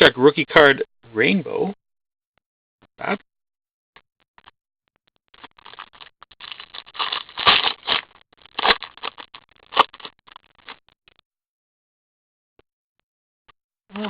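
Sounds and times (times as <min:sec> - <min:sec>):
card wrappers crackling and rustling: 0:05.4 - 0:10.9.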